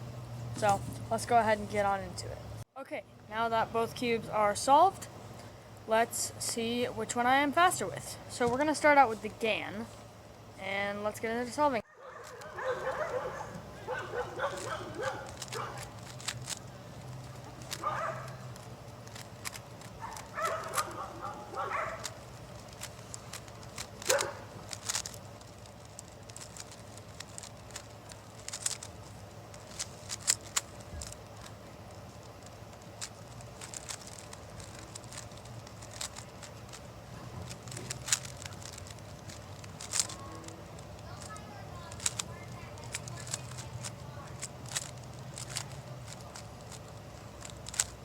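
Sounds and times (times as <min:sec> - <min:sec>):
puzzle cube clicking: 0:14.3 - 0:48.0.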